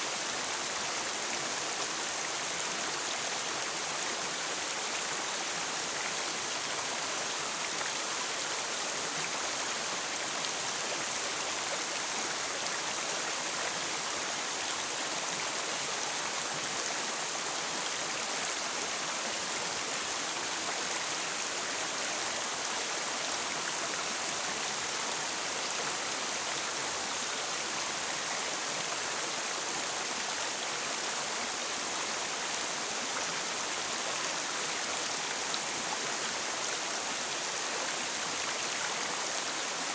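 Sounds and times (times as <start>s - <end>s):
river water flowing: 0.0s - 39.9s.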